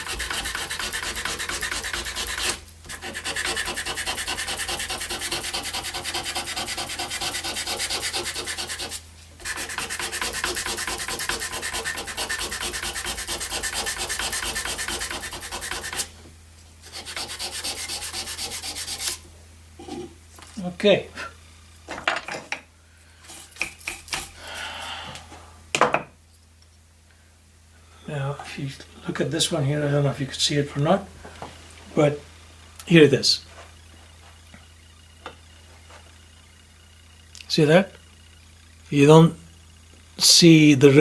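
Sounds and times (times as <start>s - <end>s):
sandpaper rubbing on metal: 0.0s - 16.1s, 16.9s - 19.2s.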